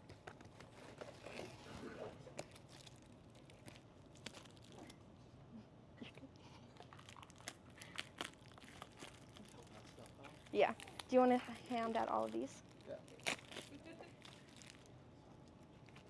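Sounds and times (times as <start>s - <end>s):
plastic packaging crinkling: 2.3s - 4.9s, 6.8s - 16.0s.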